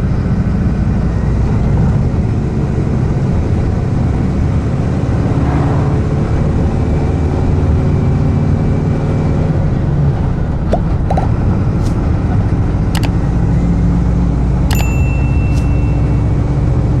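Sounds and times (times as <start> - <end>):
ringing ding: 14.7 - 16.7.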